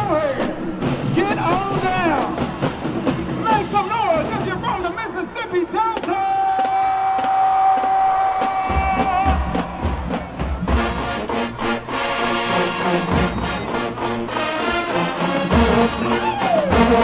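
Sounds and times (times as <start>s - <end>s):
marching band brass: 0.0s - 17.0s
drum hits: 6.0s - 11.6s.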